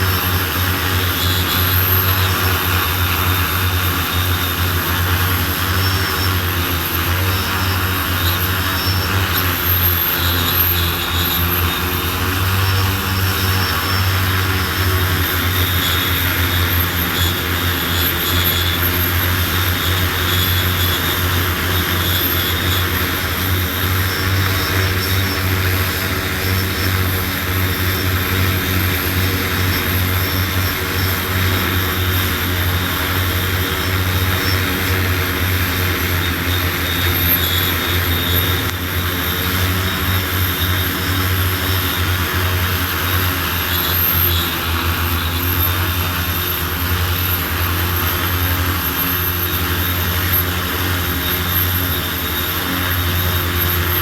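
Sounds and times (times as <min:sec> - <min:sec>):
drone propellers humming: 0:00.0 - 0:54.0.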